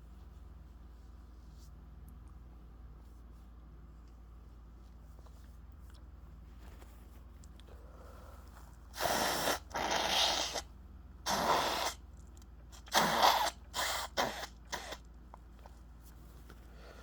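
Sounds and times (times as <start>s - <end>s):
person sniffing and breathing: 7.8s - 10.7s, 11.3s - 12.0s, 12.8s - 15.1s.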